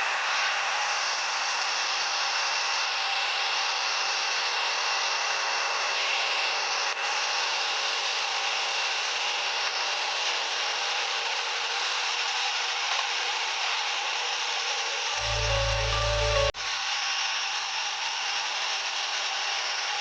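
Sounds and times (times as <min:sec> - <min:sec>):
vacuum cleaner running: 0:14.8 - 0:16.6.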